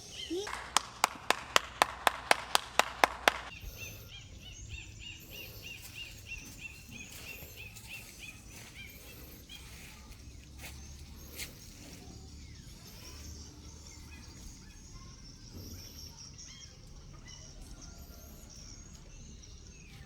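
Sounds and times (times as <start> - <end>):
bird chirping: 0.0 - 1.9, 2.7 - 20.0
outdoor background noise: 0.0 - 20.0
hand claps: 0.3 - 4.0.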